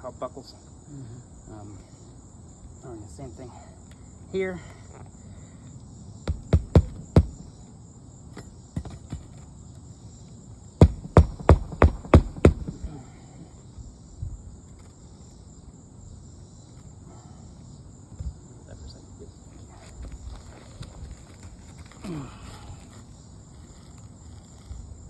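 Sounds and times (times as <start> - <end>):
insect trill: 0.0 - 25.0
hammer striking nails: 6.2 - 7.5, 8.4 - 9.4, 10.8 - 13.0.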